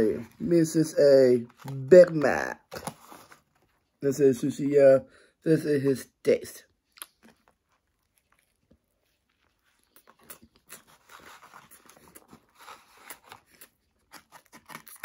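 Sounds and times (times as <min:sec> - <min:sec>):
person chewing and crunching: 0:06.8 - 0:15.0.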